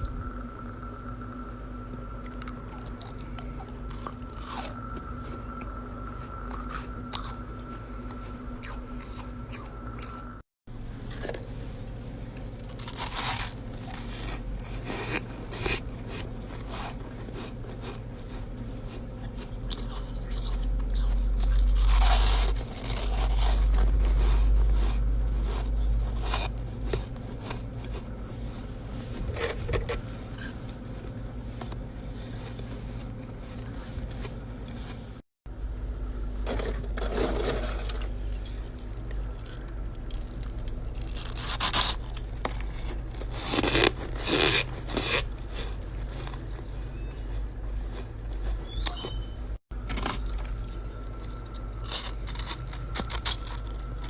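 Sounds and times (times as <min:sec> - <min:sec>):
frost being scraped and bitten: 0:12.4 - 0:35.0, 0:39.2 - 0:46.5, 0:51.6 - 0:54.0.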